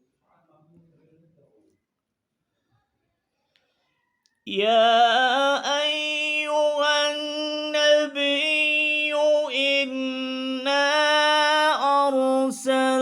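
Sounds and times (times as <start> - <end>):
man reciting melodically: 4.5 - 13.0.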